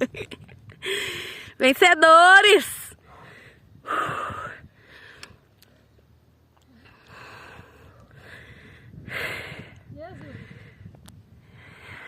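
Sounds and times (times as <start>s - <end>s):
person breathing hard: 0.8s - 1.6s, 3.0s - 5.4s, 6.7s - 12.0s.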